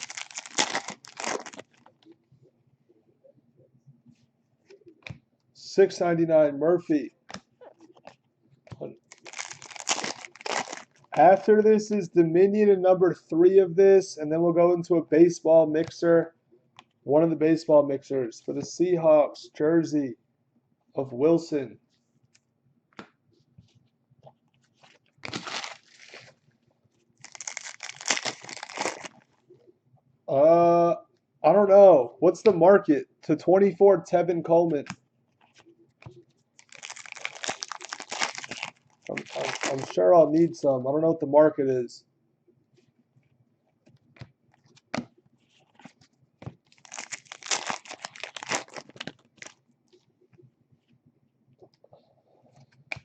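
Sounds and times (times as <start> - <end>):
foil wrapper tearing and crinkling: 0.0 - 1.9, 9.1 - 11.1, 25.2 - 26.4, 27.2 - 29.3, 36.6 - 40.0, 46.7 - 49.6.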